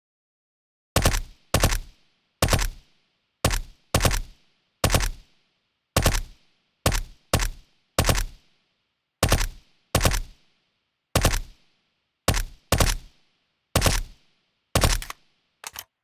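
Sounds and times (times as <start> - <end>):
suppressed submachine gun bursts: 14.8 - 15.8.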